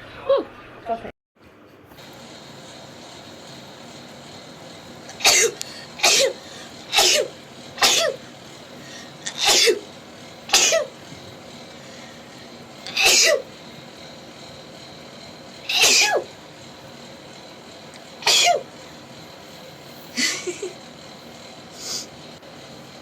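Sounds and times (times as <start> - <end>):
woman sneezing: 5.2 - 8.2, 12.9 - 13.4, 15.7 - 16.2, 18.3 - 18.6.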